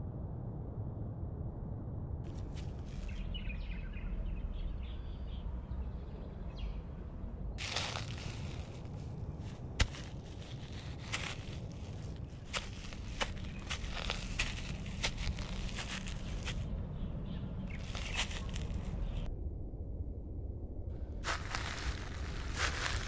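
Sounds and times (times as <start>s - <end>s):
wind rumble: 0.0s - 23.0s
rustling and crackling: 7.6s - 16.7s, 17.7s - 19.3s, 21.2s - 23.0s.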